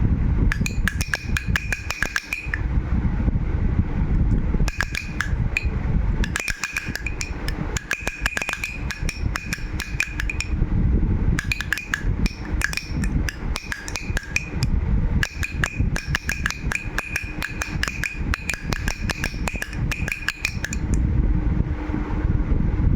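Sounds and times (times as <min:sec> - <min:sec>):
baby rattle shaken: 0:00.5 - 0:02.6, 0:04.7 - 0:10.6, 0:11.4 - 0:21.0.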